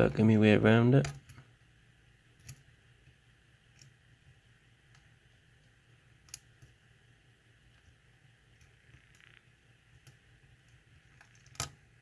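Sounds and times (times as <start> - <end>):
low steady background hum: 0.0 - 12.0
lock pick clicking in a lock: 11.2 - 11.8.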